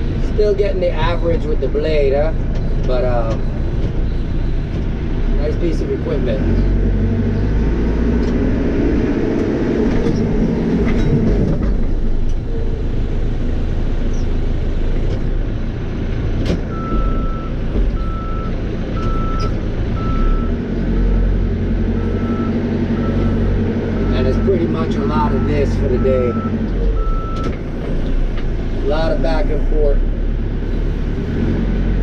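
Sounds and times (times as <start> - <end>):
diesel engine running: 0.0 - 32.0
reversing alarm beeping: 16.7 - 21.3, 22.0 - 27.6.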